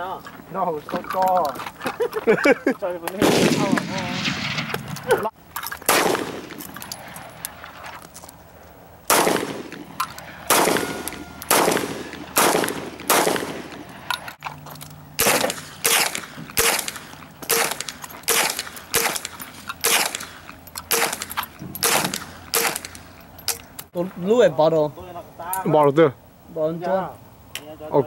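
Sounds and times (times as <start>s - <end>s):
gunshots: 3.1s - 7.4s, 9.1s - 14.2s, 15.2s - 23.1s.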